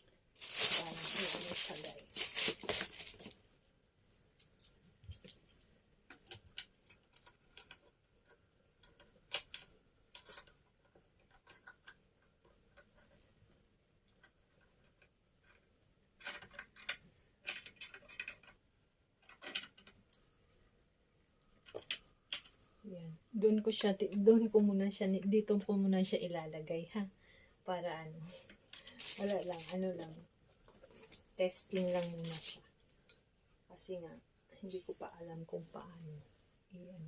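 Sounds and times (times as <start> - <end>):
clicks and rattles of parts assembled: 4.4 - 13.2, 16.2 - 20.2, 21.4 - 22.6.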